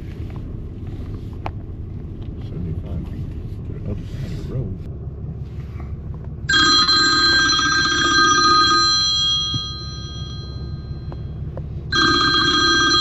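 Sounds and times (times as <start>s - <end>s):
phone ringtone ringing: 6.5s - 13.0s.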